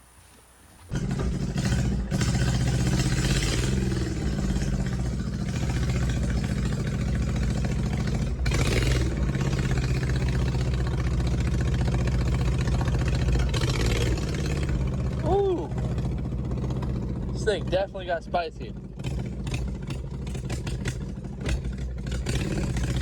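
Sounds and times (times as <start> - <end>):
small engine running under throttle: 0.9 - 23.0.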